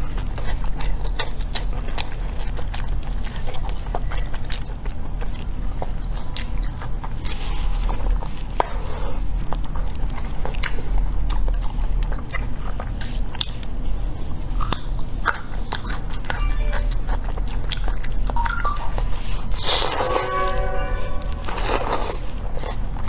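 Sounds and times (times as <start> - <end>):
wet chewing and lip-smacking: 0.0 - 8.8, 9.4 - 20.0
steady low hum: 16.0 - 23.0
brief pitched tone: 16.3 - 17.2, 18.4 - 22.4.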